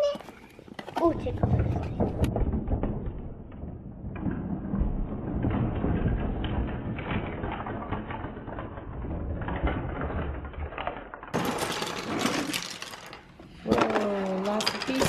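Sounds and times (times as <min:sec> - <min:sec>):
plastic toy tools clattering: 0:07.4 - 0:15.0.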